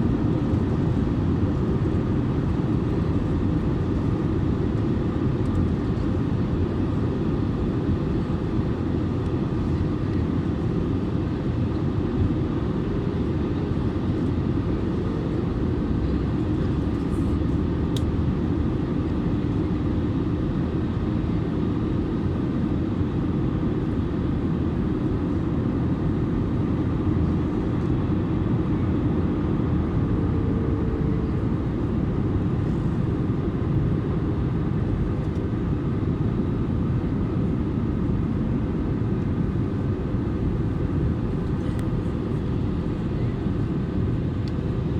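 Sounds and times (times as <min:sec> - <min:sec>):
airplane cabin rumble: 0:00.0 - 0:44.9.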